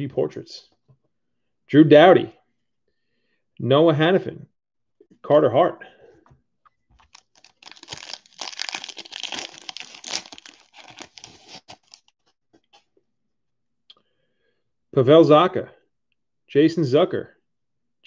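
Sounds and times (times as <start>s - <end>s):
foil wrapper tearing and crinkling: 7.0s - 12.1s.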